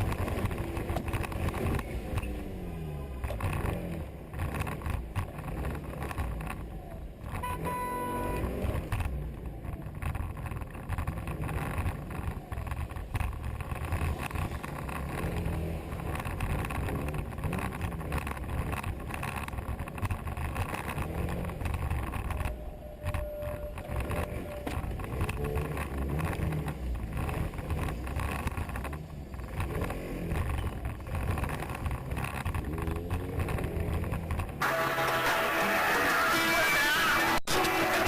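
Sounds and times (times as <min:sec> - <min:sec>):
car engine and road noise: 0:00.0 - 0:38.0
short horn tone: 0:07.4 - 0:08.5, 0:34.6 - 0:38.0.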